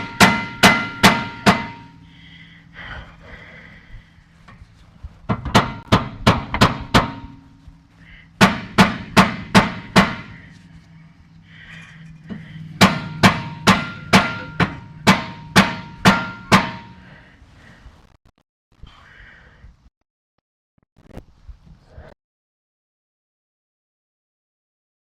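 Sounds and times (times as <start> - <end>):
hammer blows on metal: 0.0 - 2.4, 5.3 - 7.8, 8.4 - 10.7, 11.7 - 17.2.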